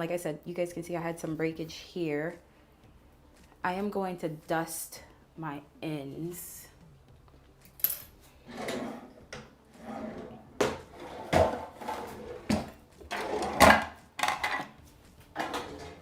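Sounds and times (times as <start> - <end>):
objects being handled: 7.2 - 16.0.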